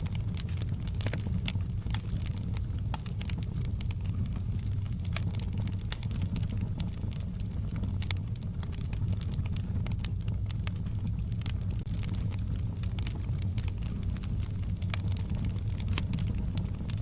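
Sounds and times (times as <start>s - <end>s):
fire crackling and popping: 0.0s - 17.0s.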